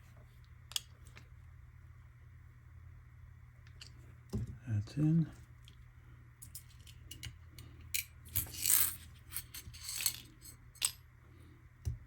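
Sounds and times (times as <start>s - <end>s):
small metal parts clinking: 6.4s - 11.0s.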